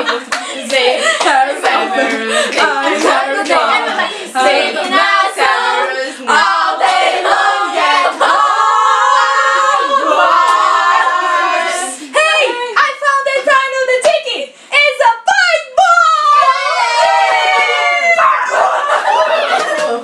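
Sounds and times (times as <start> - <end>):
children singing a cappella: 0.0 - 12.2.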